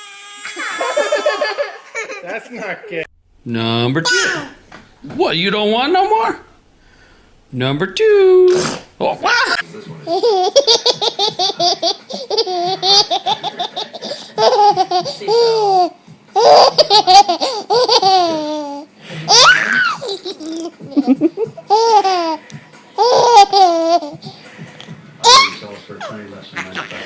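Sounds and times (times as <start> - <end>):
baby laughing: 0.3 - 2.8, 4.0 - 4.6, 9.2 - 22.4, 23.0 - 24.2
baby squealing: 4.0 - 4.6, 25.2 - 25.6.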